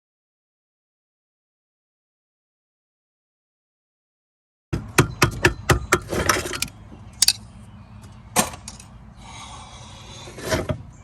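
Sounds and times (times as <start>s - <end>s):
sharp metallic knocks: 4.7s - 7.4s.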